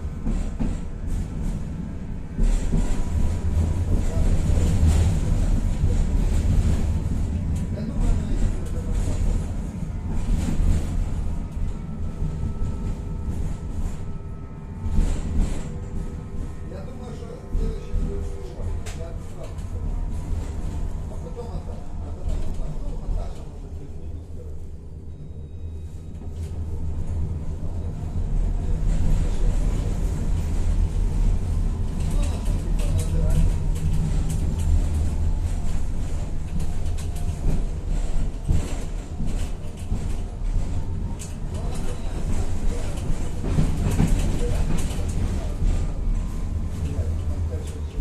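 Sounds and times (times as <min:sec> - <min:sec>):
tram knocks: 0:00.0 - 0:14.1
tram wheels rumbling on rails: 0:00.0 - 0:48.0.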